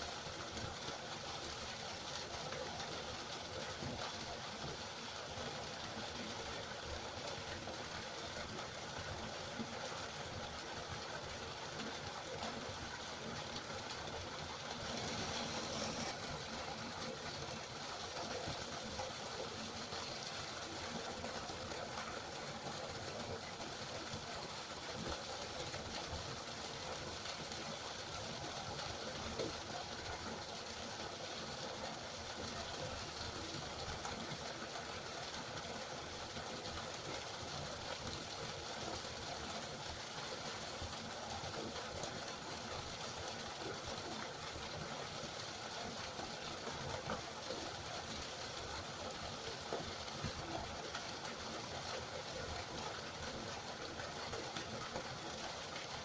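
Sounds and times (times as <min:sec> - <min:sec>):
river water rushing: 0:14.6 - 0:16.5.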